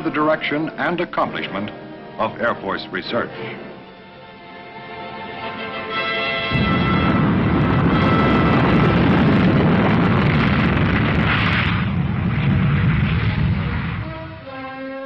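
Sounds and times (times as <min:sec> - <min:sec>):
powerful engine rushing rumble: 0:06.5 - 0:14.5.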